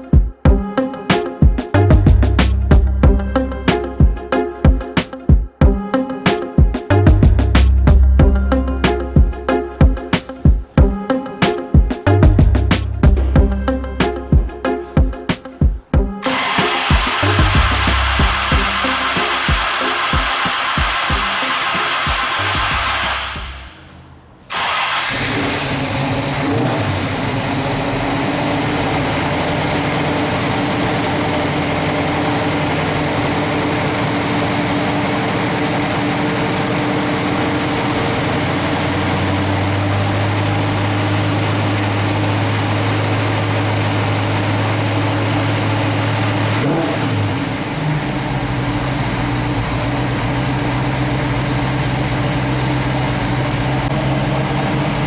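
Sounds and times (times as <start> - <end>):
car engine idling: 16.2 - 55.0
engine revving: 16.2 - 55.0.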